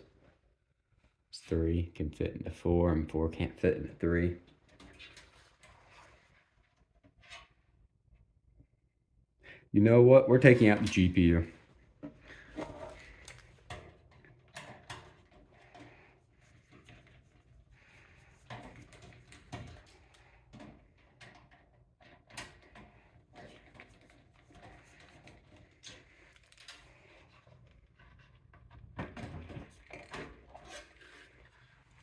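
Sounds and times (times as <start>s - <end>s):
hands handling computer parts: 10.4s - 32.0s.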